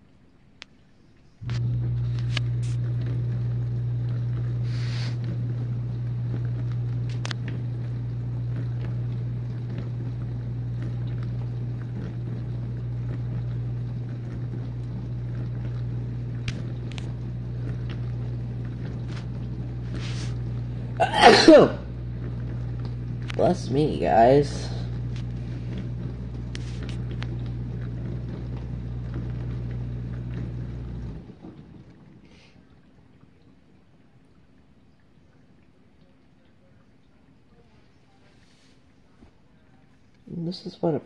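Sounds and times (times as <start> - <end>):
dishwasher pump humming: 0.0 - 41.0
water spraying: 4.6 - 5.2, 18.9 - 21.8.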